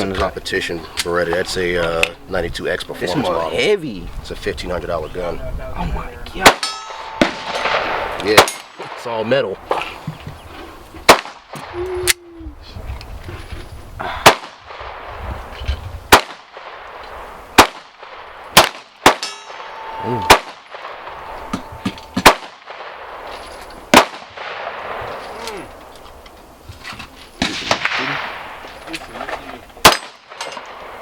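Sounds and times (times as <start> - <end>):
pistol shots: 6.4 - 9.3, 11.1 - 11.7, 14.2 - 15.2, 16.1 - 19.7, 20.3 - 23.3, 23.9 - 25.0, 29.8 - 31.0.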